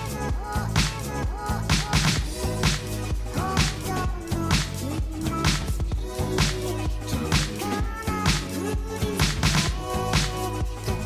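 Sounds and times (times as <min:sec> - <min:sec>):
instrumental beat with snare hits: 0:01.7 - 0:04.7.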